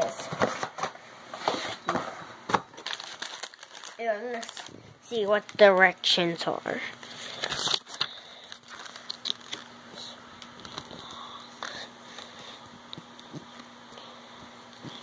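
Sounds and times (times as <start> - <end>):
paper and plastic bags rustling: 2.7 - 12.3.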